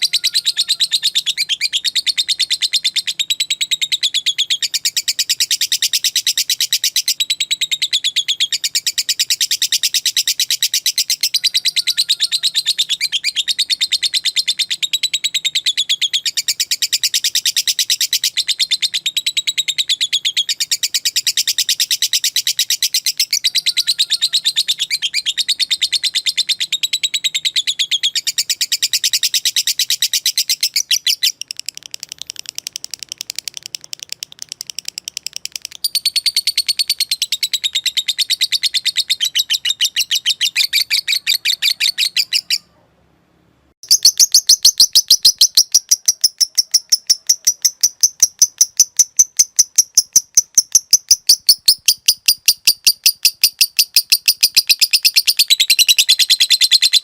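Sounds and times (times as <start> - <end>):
lovebird chattering trill: 0.0 - 42.7, 43.8 - 57.0.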